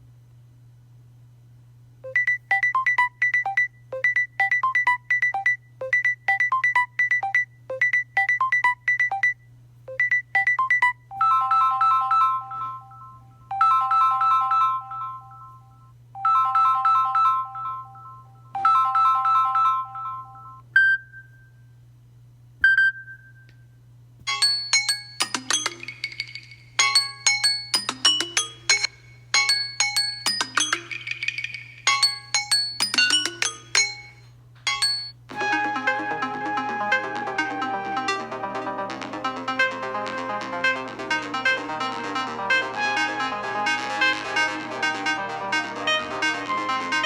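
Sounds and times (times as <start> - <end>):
electronic ringtone melody: 10.4 - 20.6, 24.3 - 47.0
ringtone of held chords: 10.4 - 21.3, 24.3 - 47.0
pinging notes: 24.3 - 47.0.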